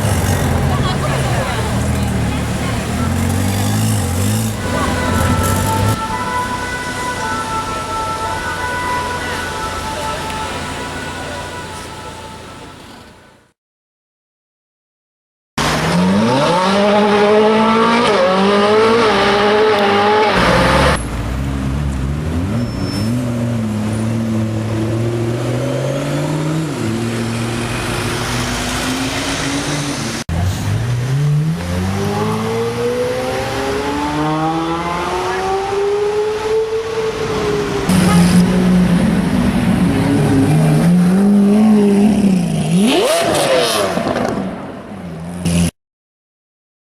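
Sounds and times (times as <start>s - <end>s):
car engines revving and accelerating: 0.0s - 6.1s, 15.6s - 45.7s.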